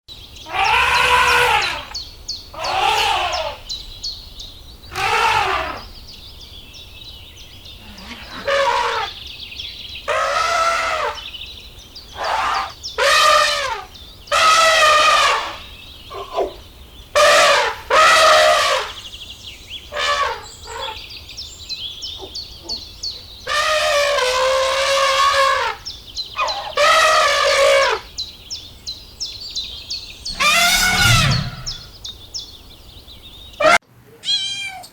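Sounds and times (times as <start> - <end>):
small birds chirping: 0.1 - 17.9, 18.8 - 23.9, 25.5 - 34.9
drawn-out animal calls: 30.3 - 31.8.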